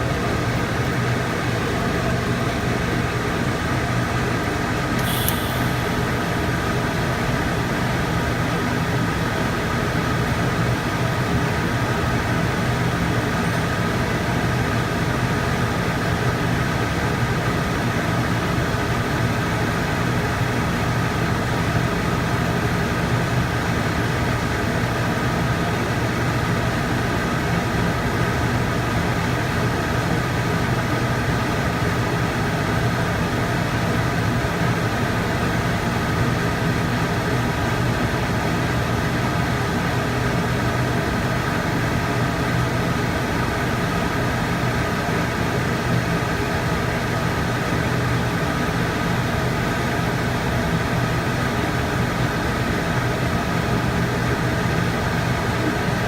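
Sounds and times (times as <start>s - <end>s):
welding arc buzzing hiss: 5.0s - 6.8s.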